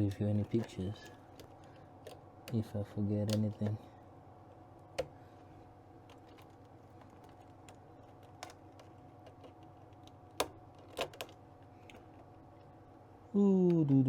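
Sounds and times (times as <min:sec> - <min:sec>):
faint steady hum: 0:00.0 - 0:14.0
wire connectors clicking: 0:00.3 - 0:03.8, 0:06.0 - 0:12.7.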